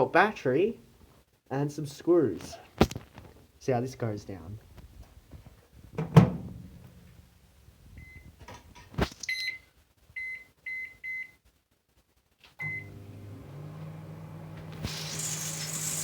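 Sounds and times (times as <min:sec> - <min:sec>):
microwave keypad beeps: 0:09.3 - 0:09.6, 0:12.6 - 0:12.9
microwave oven humming: 0:12.6 - 0:16.0.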